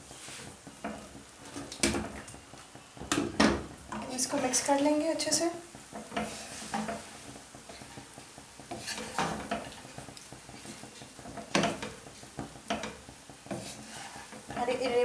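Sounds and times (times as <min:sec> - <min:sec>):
spoon scraping rice in pot: 0:06.0 - 0:07.9, 0:10.5 - 0:14.7.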